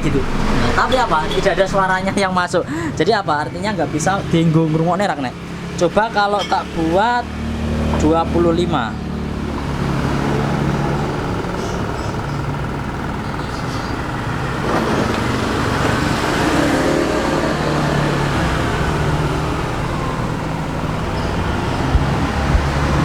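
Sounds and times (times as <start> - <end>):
subwoofer low test tone rumble: 20.6 - 23.0.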